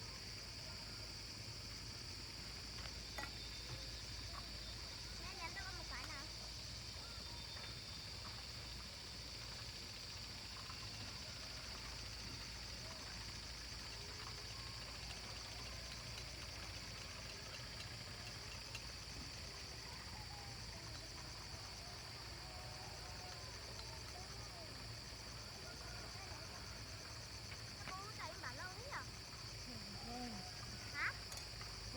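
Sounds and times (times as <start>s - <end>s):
chorus of insects: 0.0s - 31.9s.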